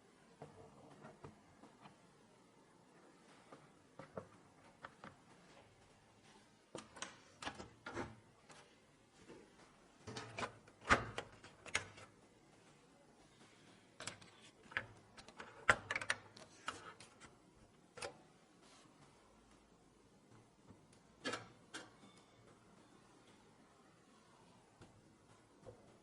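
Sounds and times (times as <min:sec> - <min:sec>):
computer parts clicking and knocking: 0:06.7 - 0:08.7, 0:10.0 - 0:12.2, 0:13.7 - 0:18.2, 0:20.3 - 0:22.6.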